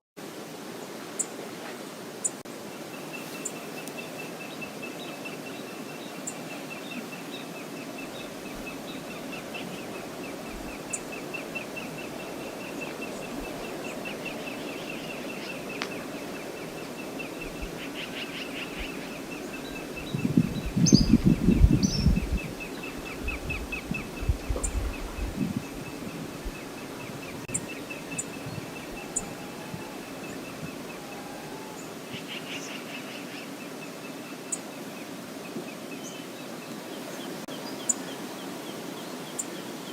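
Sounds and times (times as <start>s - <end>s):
river rushing: 0.2s - 20.8s, 25.6s - 39.9s.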